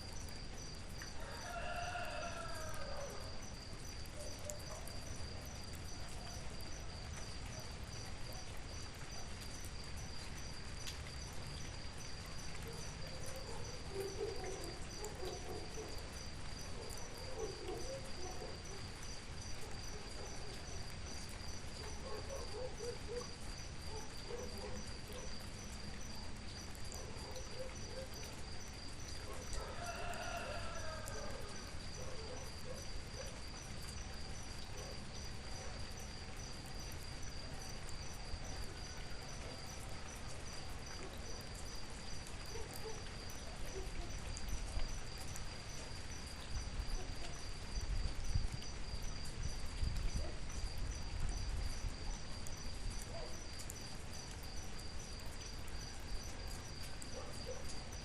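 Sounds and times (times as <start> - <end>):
rain hiss: 0.0 - 58.0
rooster crowing: 1.2 - 3.3, 29.5 - 31.7
insect trill: 20.6 - 58.0.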